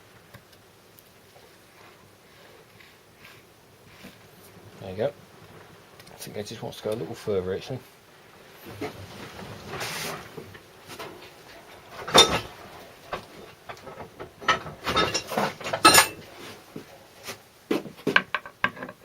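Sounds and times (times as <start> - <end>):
metal tools clinking on workbench: 12.0 - 12.6, 14.4 - 16.2.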